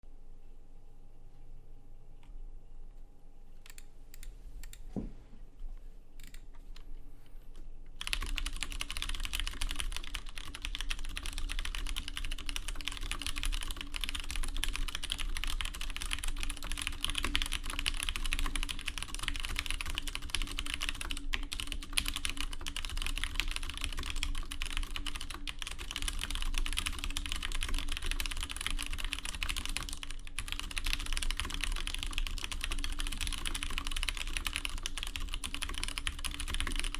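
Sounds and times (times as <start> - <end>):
typing on mechanical keyboard: 8.0 - 36.9.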